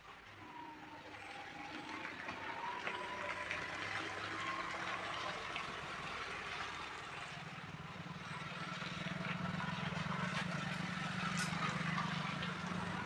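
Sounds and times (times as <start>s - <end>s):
vehicle engine humming: 6.8s - 13.0s.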